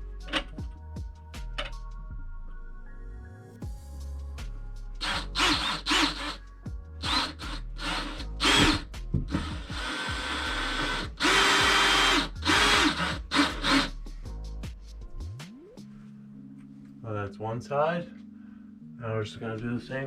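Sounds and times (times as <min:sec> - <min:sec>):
power drill driving screws: 0:05.0 - 0:06.4, 0:07.0 - 0:13.9.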